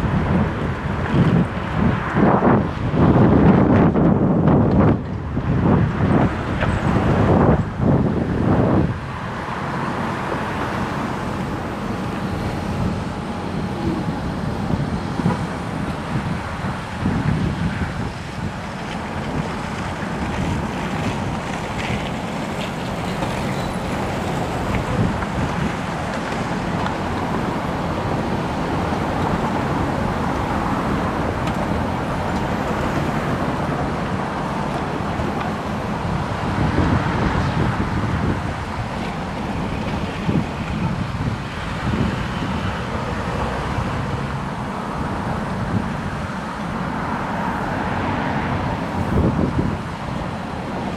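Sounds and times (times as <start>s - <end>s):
street traffic: 0.0s - 50.9s
wind rushing over microphone: 0.0s - 50.9s.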